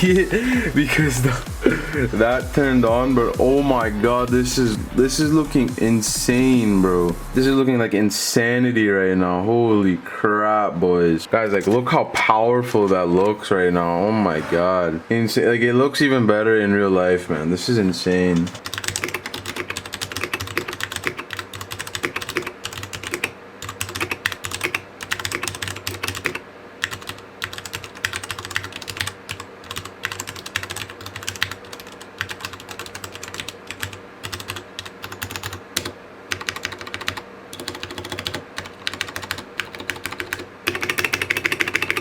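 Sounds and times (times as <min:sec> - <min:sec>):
fast typing on mechanical keyboard: 0:18.4 - 0:42.0.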